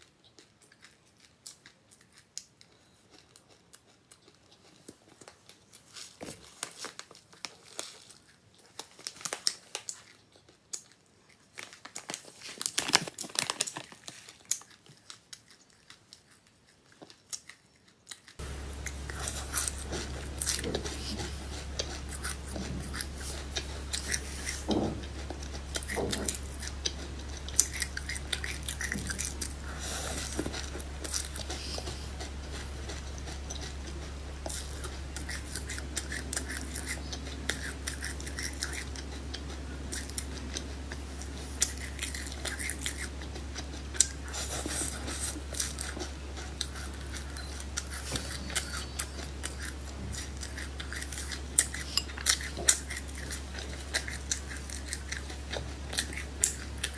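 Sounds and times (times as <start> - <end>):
chewing crunches: 0.0 - 56.9
steady low hum: 18.4 - 56.9.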